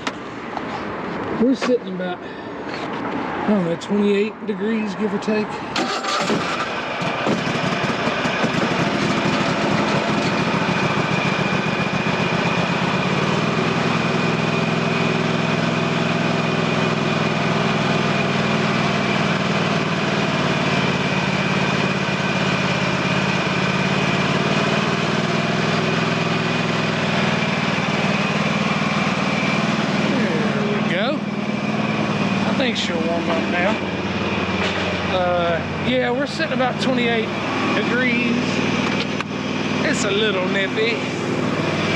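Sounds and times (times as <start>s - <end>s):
lawn tractor engine idling: 5.7s - 41.9s.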